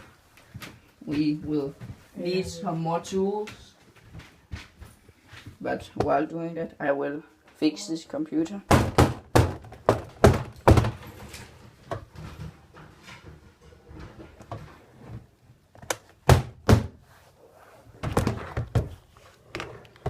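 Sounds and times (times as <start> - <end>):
hard thuds in a small room: 8.7 - 14.1, 16.2 - 17.0, 18.0 - 19.0.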